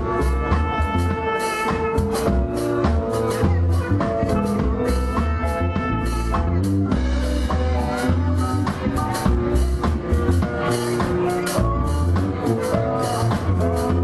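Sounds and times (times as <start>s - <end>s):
live band playing steady beat: 0.0s - 14.0s.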